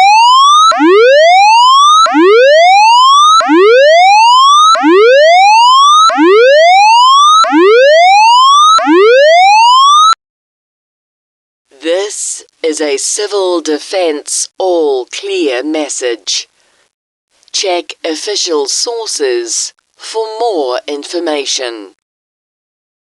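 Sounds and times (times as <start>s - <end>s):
warning siren rising tone: 0.0s - 10.2s.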